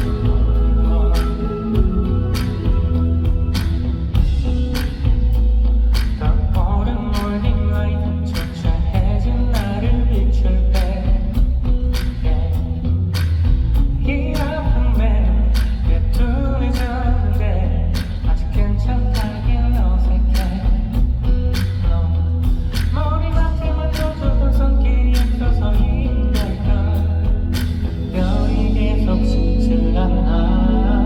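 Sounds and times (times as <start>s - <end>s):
wavering melodic lead line: 0.0s - 10.0s
heavy bass: 0.0s - 31.0s
live pop-rock band: 0.0s - 31.0s.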